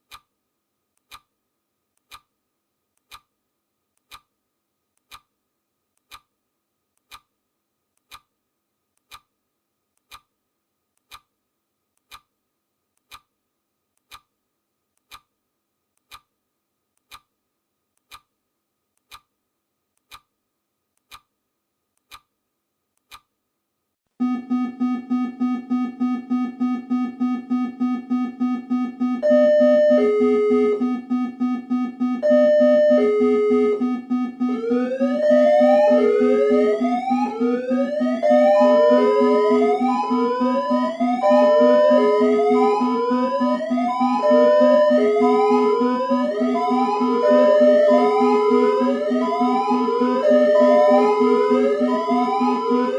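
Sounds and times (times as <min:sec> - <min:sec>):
clock ticking: 0:00.0 - 0:00.3, 0:01.0 - 0:01.4, 0:02.0 - 0:02.4, 0:03.0 - 0:03.4, 0:04.0 - 0:04.4, 0:05.0 - 0:05.4, 0:06.0 - 0:06.4, 0:07.0 - 0:07.4, 0:08.0 - 0:08.4, 0:09.0 - 0:09.4, 0:10.0 - 0:10.4, 0:11.0 - 0:11.4, 0:12.0 - 0:12.4, 0:13.0 - 0:13.4, 0:14.0 - 0:14.3, 0:15.0 - 0:15.4, 0:16.0 - 0:16.4, 0:17.0 - 0:17.4, 0:18.0 - 0:18.4, 0:19.0 - 0:19.4, 0:20.0 - 0:20.4, 0:21.0 - 0:21.4, 0:22.0 - 0:22.4, 0:23.0 - 0:23.3, 0:25.1 - 0:52.9
pulsing electronic alarm: 0:24.2 - 0:52.9
synth keyboard melody: 0:24.2 - 0:52.9.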